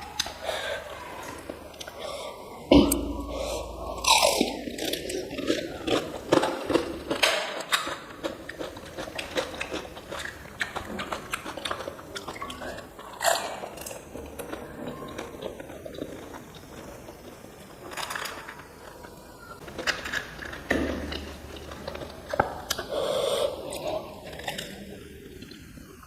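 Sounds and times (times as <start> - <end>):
crunchy food chewing: 4.0 - 22.9.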